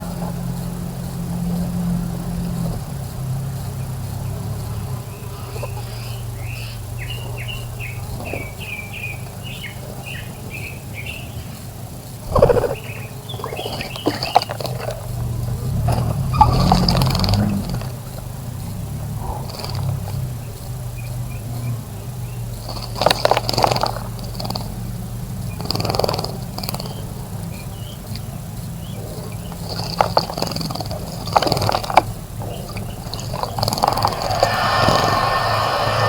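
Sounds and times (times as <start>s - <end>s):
steady low hum: 0.0s - 23.4s, 31.9s - 36.0s
small birds chirping: 0.0s - 36.0s
brief loud noise: 33.8s - 36.0s.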